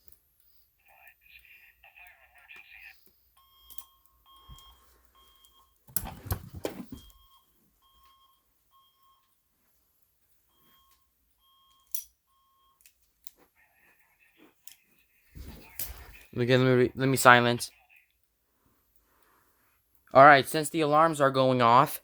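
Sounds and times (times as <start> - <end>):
fire alarm electronic beeps: 3.0 - 9.4, 10.5 - 12.8.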